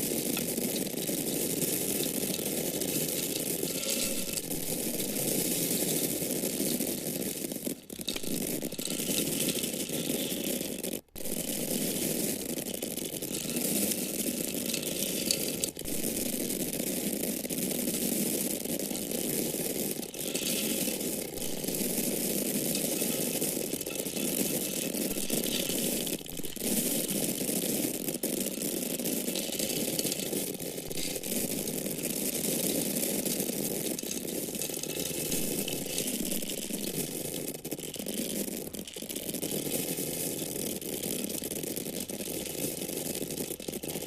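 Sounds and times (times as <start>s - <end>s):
corn grains falling: 0.0s - 44.0s.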